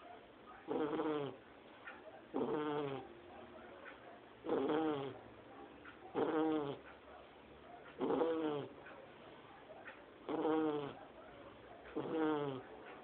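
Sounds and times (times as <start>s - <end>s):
puppy snoring: 0.6s - 1.4s, 2.3s - 3.2s, 4.4s - 5.2s, 6.0s - 6.9s, 8.0s - 8.9s, 10.2s - 11.1s, 11.9s - 13.0s.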